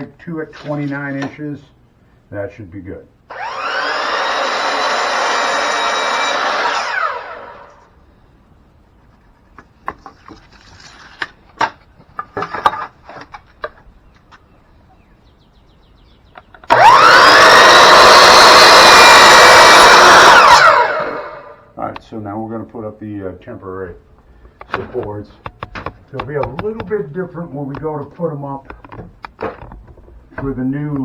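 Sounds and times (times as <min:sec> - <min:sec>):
power saw cutting wood: 0:03.3 - 0:07.8, 0:16.7 - 0:21.6
knocks and clicks: 0:24.6 - 0:27.1.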